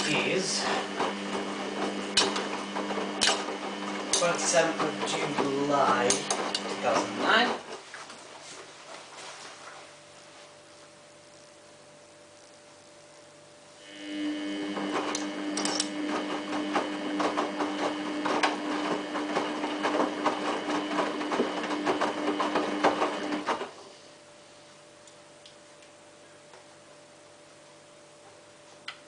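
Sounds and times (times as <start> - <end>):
washing machine motor whine: 0.0 - 8.6, 9.2 - 25.0
tumbling load clicks and knocks: 14.8 - 23.6.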